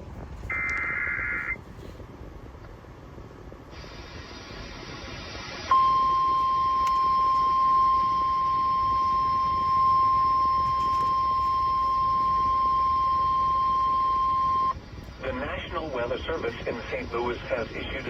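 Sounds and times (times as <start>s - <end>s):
loud steady alarm tone: 0.5s - 1.6s, 5.7s - 14.8s
radio hiss: 0.5s - 1.6s, 3.6s - 7.6s, 14.4s - 18.0s.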